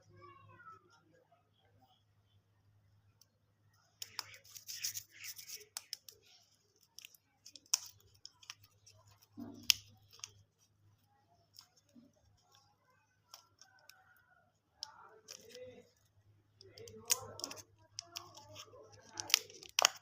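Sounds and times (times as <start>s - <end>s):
sharp clicks and snips: 4.0s - 10.4s, 11.4s - 16.0s, 16.6s - 20.0s
plastic packaging crinkling: 15.2s - 15.9s, 16.6s - 20.0s.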